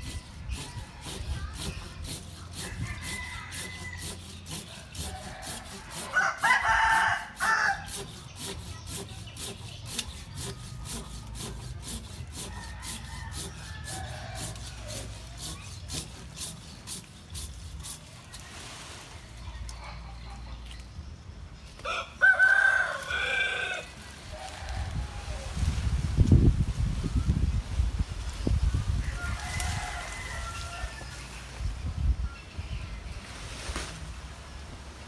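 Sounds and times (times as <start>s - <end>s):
rooster crowing: 2.6s - 4.2s, 5.1s - 7.9s, 12.5s - 14.9s, 21.8s - 25.2s, 29.1s - 31.1s.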